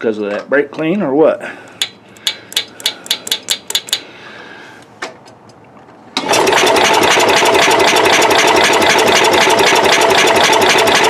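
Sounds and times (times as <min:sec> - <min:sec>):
engine cranking on starter: 0:06.2 - 0:11.0.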